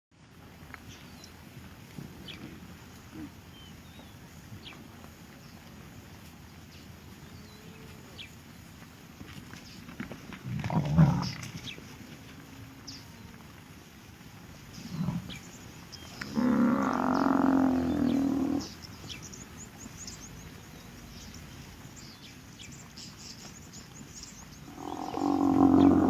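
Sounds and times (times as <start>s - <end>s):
big cat roaring: 10.5s - 11.4s, 16.2s - 18.7s, 24.7s - 26.0s.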